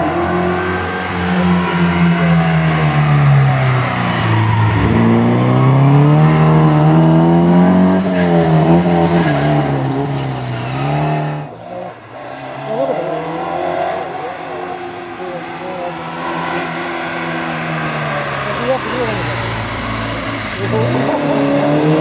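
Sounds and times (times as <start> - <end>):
rally car engine revving: 0.0 - 22.0.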